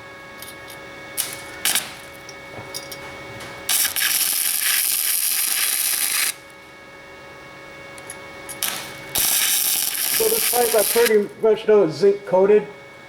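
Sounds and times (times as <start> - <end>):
welder arc strikes: 0.0 - 6.6, 8.0 - 11.6
crackling welding arc: 0.4 - 6.6, 8.0 - 11.5.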